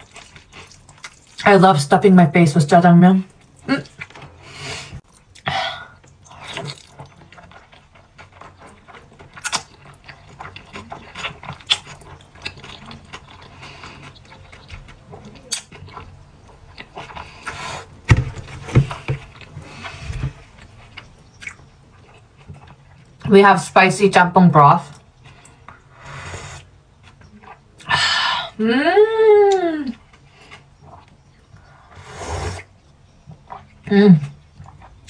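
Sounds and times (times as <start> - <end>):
wet chewing and smacking: 0.0 - 1.5, 3.3 - 4.4, 5.0 - 23.3, 24.9 - 26.0, 26.6 - 27.9, 29.9 - 31.9, 32.6 - 35.0.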